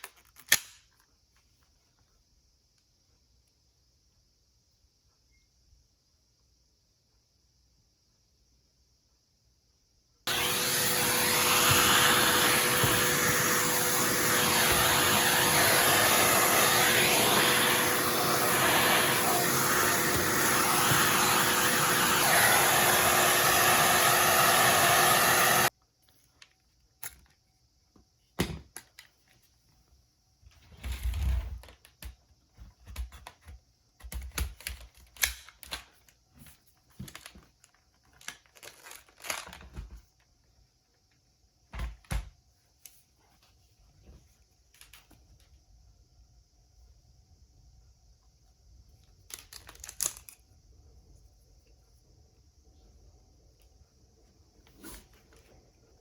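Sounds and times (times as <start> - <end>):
vacuum cleaner running: 10.3 - 25.7.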